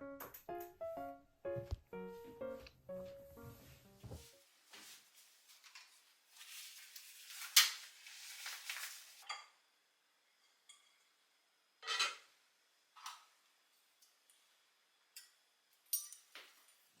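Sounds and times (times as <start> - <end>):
dishes and cutlery clattering: 11.8 - 12.3.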